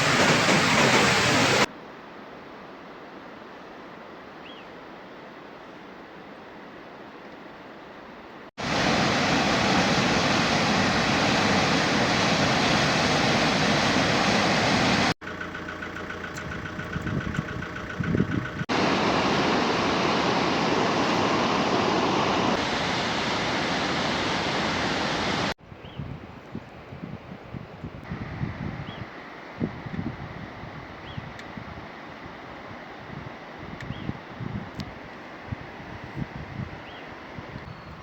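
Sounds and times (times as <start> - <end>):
waterfall rushing: 0.0 - 1.7, 8.6 - 15.2, 18.7 - 25.6.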